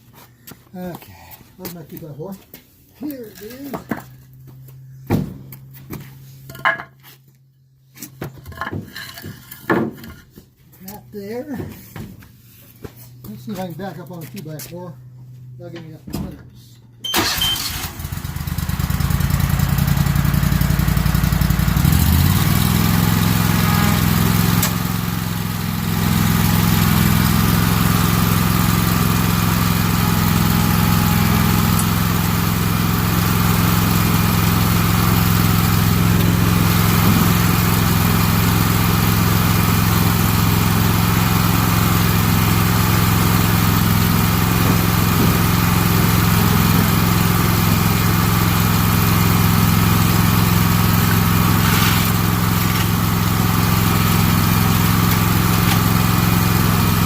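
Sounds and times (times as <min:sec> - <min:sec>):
mower engine starting and running: 0:17.0 - 0:57.0.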